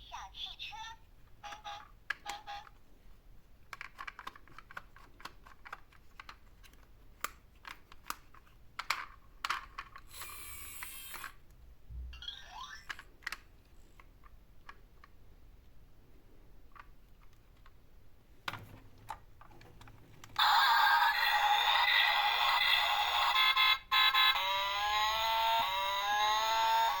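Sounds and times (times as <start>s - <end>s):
plastic toy vehicles clattering: 3.6s - 11.4s, 18.5s - 20.4s.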